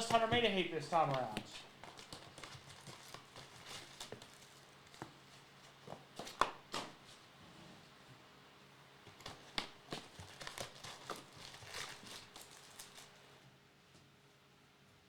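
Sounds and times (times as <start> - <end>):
cards rustling: 0.0 - 7.1, 9.1 - 13.2
foil wrappers crinkling: 0.0 - 7.1, 9.1 - 13.4.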